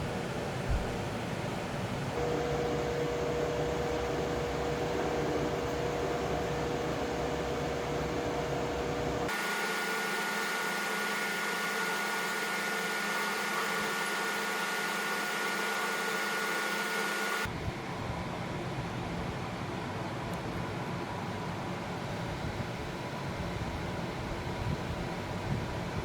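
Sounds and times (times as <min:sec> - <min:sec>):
electric drill whining: 0:08.2 - 0:17.5.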